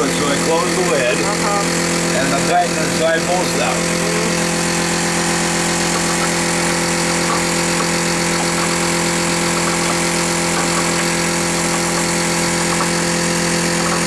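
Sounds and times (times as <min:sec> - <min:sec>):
motor humming: 0:00.0 - 0:14.0.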